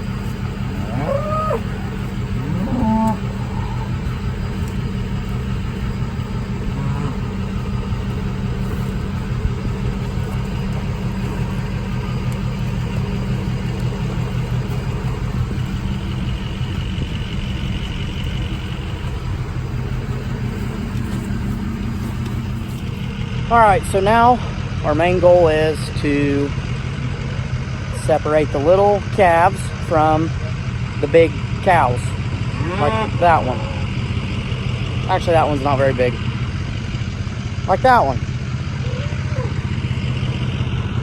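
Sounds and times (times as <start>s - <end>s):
cattle mooing: 0.0s - 23.3s, 32.5s - 34.2s
truck engine running: 0.0s - 41.0s.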